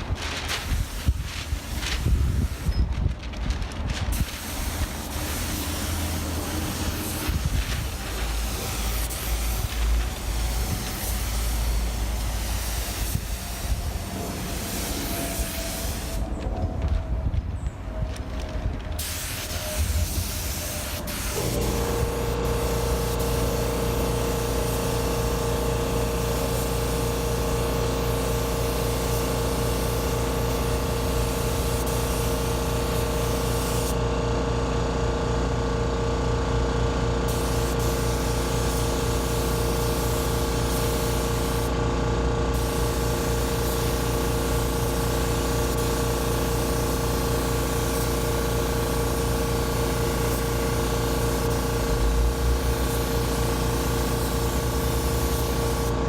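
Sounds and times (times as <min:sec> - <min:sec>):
paint spray gun hissing: 0:04.1 - 0:16.3, 0:19.0 - 0:34.0, 0:37.3 - 0:41.8, 0:42.5 - 0:56.0
steady motor hum: 0:21.4 - 0:56.0.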